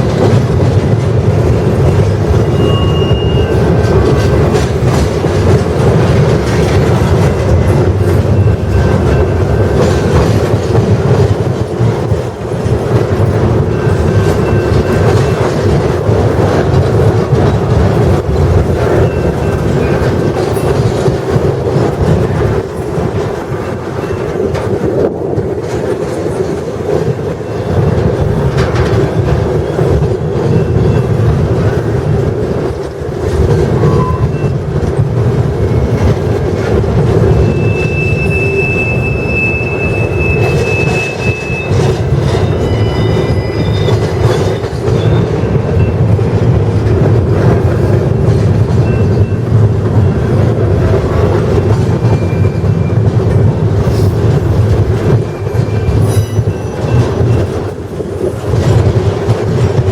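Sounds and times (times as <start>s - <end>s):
train wheels clattering over rail joints: 0.0s - 59.9s
high wheel squeals: 2.4s - 3.7s, 37.3s - 46.0s.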